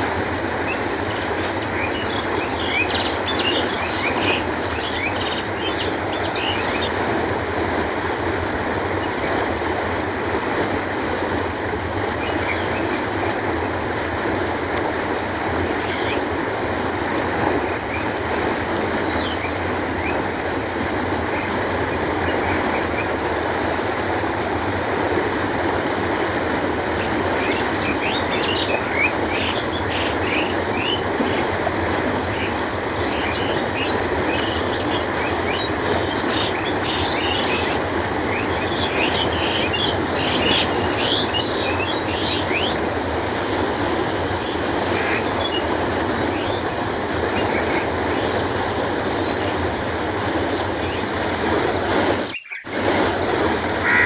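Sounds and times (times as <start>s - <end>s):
canal water flowing: 0.0s - 54.0s
small birds chirping: 0.7s - 7.0s, 27.0s - 31.5s, 32.2s - 42.9s, 52.2s - 52.7s.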